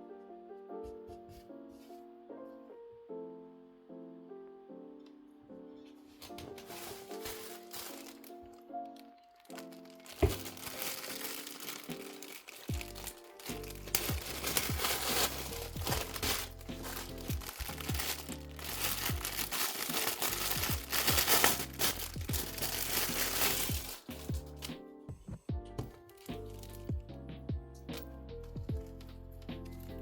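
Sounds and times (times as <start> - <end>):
lo-fi background music with beat: 4.7 - 30.0
plastic packaging crinkling: 6.2 - 24.7.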